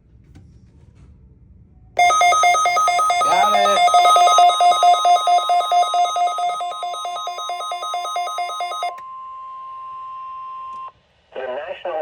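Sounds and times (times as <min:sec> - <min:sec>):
two-pitch trilling electronic alarm: 0:02.0 - 0:08.9
steady warning alarm tone: 0:02.0 - 0:09.0.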